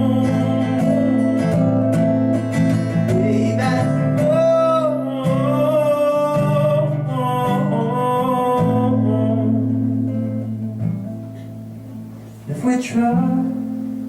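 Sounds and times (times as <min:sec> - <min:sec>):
person singing long notes: 0:00.0 - 0:10.7
acoustic guitar strumming: 0:00.0 - 0:14.0.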